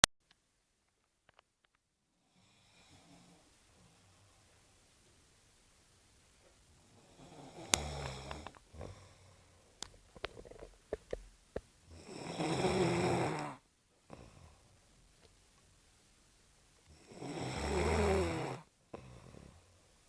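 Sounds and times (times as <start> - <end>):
person snoring: 6.9 - 9.4, 11.9 - 14.7, 16.9 - 19.7.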